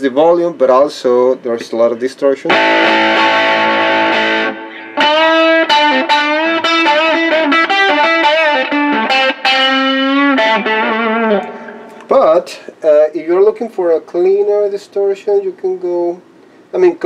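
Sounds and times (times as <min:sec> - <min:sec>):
distorted electric guitar: 0:02.5 - 0:12.2.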